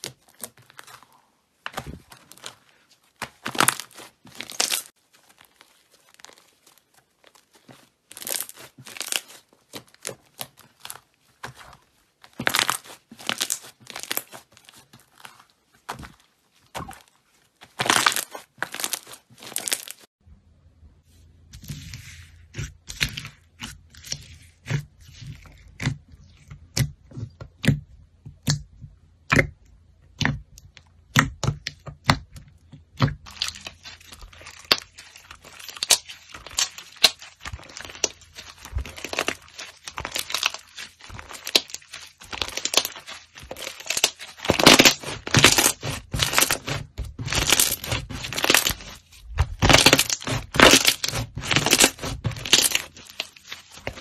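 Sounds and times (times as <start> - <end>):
slime crackling and popping: 3.2 - 16.2, 16.8 - 20.1, 33.2 - 54.0.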